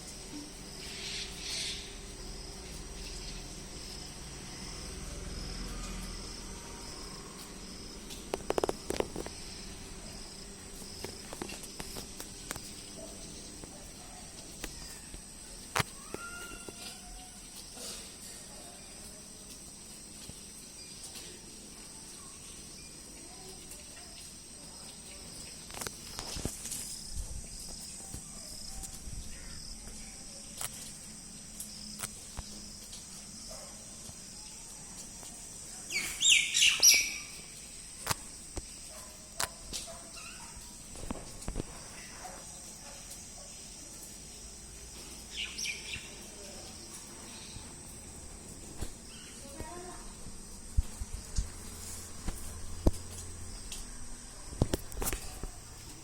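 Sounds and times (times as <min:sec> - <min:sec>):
bird chirping: 0:35.9 - 0:37.6, 0:45.3 - 0:46.3.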